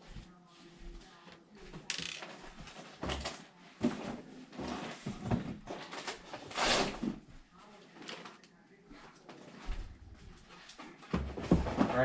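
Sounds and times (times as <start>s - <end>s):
computer parts rustling and clicking: 1.9s - 3.4s.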